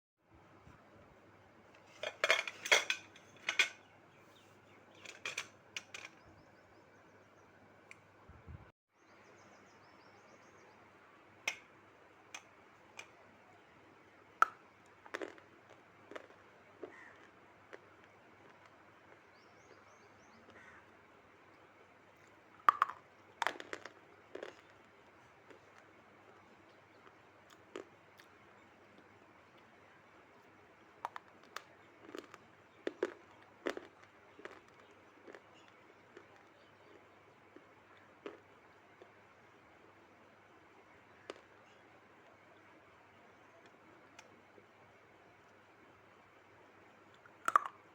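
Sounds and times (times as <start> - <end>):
faint steady hum: 0.2 - 47.9
sharp crunches and clicks: 14.4 - 19.8, 22.2 - 29.7, 31.0 - 39.2, 47.1 - 47.8.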